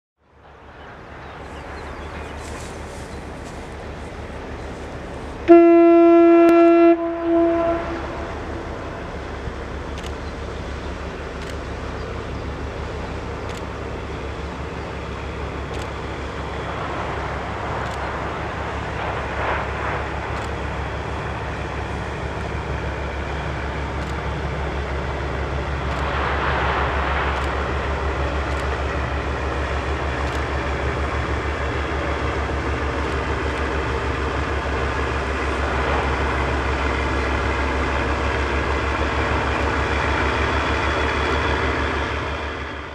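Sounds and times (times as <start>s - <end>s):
diesel engine throbbing drone: 1.8s - 42.9s
ship's horn blast: 5.5s - 9.1s.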